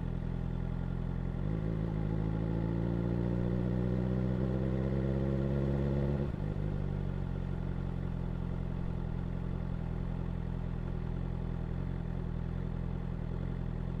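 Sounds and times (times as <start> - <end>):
motorcycle engine idling: 0.0 - 2.5, 6.4 - 14.0.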